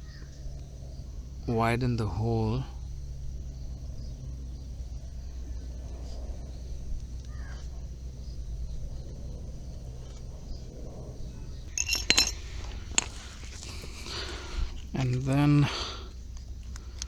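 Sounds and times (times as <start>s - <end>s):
steady low hum: 0.0s - 17.0s
sharp clicks and rattles: 11.7s - 15.5s
quiet handling sounds: 11.7s - 17.0s.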